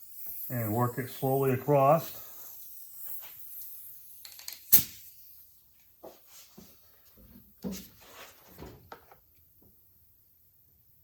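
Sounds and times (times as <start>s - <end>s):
welding crackling bursts: 0.0s - 5.6s.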